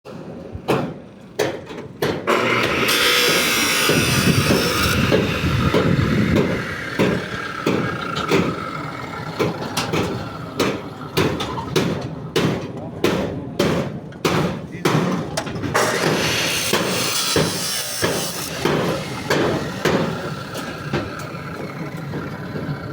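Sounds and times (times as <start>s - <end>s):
motorised machine running: 2.3s - 12.4s, 15.5s - 22.9s
sharp knocks: 9.4s - 21.4s.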